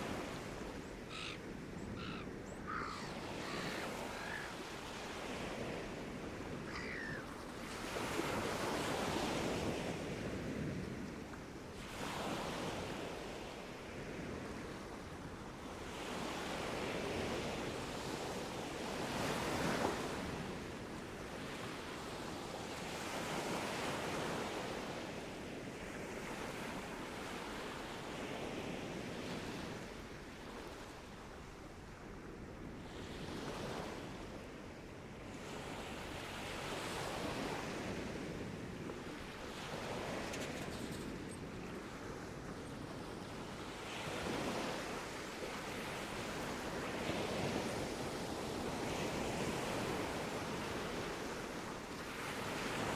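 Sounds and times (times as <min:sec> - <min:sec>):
sea waves breaking on beach: 0:00.0 - 0:00.7, 0:02.7 - 0:11.0, 0:35.2 - 0:52.9.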